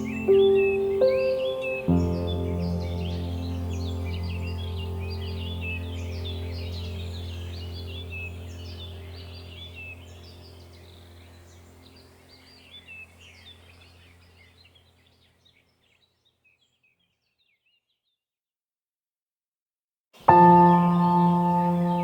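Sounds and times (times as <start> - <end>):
birds chirping and calling: 0.0 - 17.8
low steady drone: 1.9 - 14.2.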